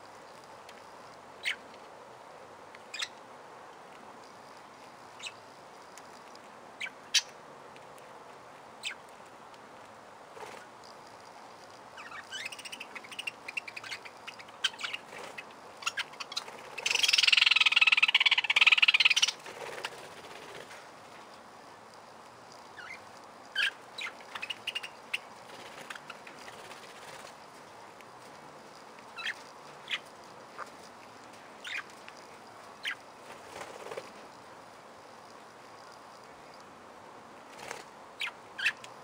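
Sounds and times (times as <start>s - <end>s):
budgerigars chirping and chattering: 2.9s - 3.2s, 12.0s - 20.0s, 23.6s - 27.2s, 29.2s - 30.7s, 31.6s - 31.9s, 32.8s - 33.0s, 38.2s - 38.8s.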